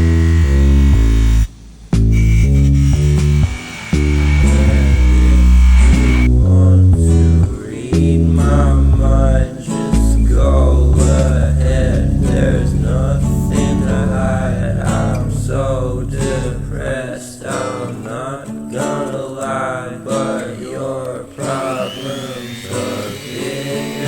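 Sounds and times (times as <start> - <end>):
deep bass: 0.0 - 17.2
person singing: 3.9 - 24.0
acoustic guitar: 6.2 - 21.7.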